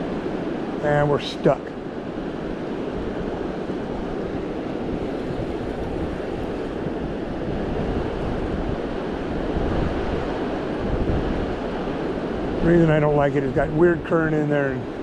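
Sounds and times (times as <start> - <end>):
wind on microphone: 3.9 - 12.6
river water flowing: 4.2 - 7.4.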